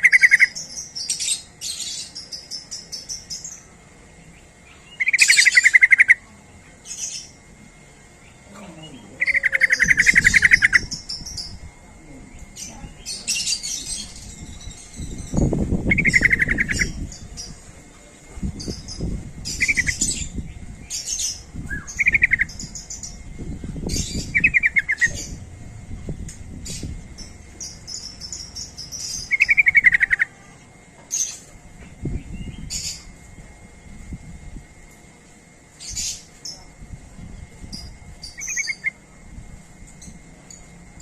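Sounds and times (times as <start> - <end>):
bulbul warbling song: 0.0 - 3.7, 4.8 - 6.2, 8.3 - 11.8, 12.4 - 17.6, 18.5 - 30.5
high bird chirps: 0.0 - 3.7, 4.7 - 6.2, 8.3 - 11.7, 12.4 - 17.6, 18.5 - 30.5, 37.7 - 39.0.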